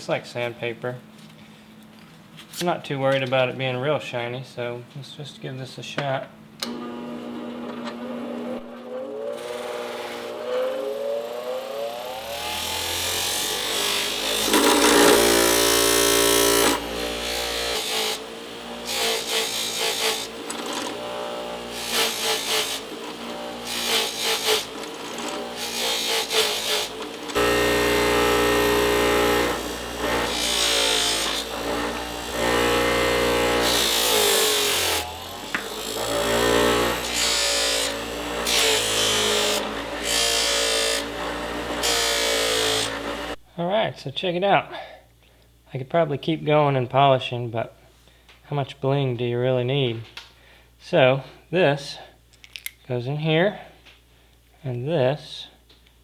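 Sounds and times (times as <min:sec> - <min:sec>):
buffing wheel motor running: 0:06.6 - 0:43.4.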